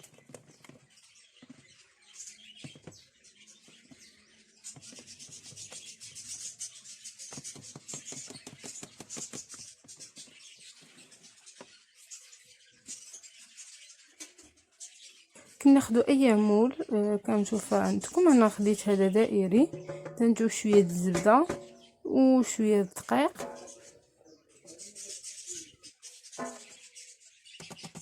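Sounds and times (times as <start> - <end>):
utensil scraping in a bowl: 17.4 - 22.0, 23.0 - 24.0.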